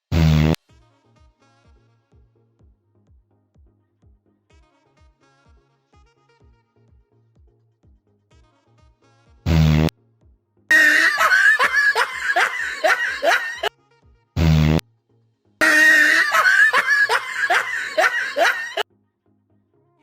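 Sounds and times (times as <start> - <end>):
buzzing fart sound effect: 0.0 - 0.6, 9.5 - 9.9, 10.7 - 13.7, 14.4 - 14.8, 15.6 - 18.8
laugh track: 10.7 - 13.7, 15.6 - 18.8.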